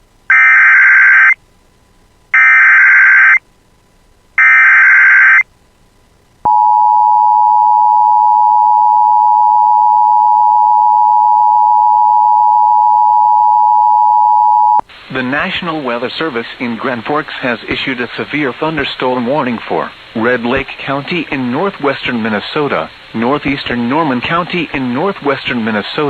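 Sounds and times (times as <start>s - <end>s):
two-tone attention signal: 6.5s - 14.8s.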